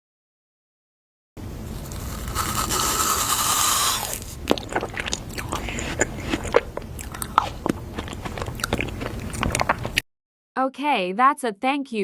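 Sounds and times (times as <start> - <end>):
biting and crunching chewing: 1.7 - 10.0.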